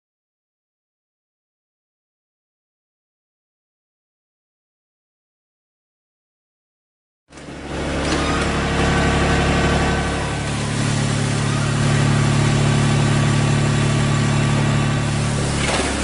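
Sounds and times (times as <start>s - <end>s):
engine running: 7.3s - 16.0s.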